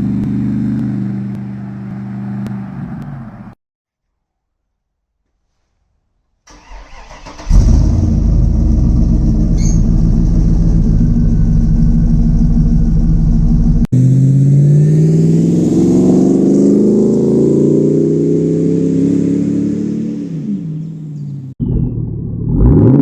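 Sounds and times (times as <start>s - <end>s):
engine revving: 0.0s - 3.6s, 6.6s - 23.0s
engine starter cranking: 6.5s - 8.0s
engine idling: 6.6s - 14.5s.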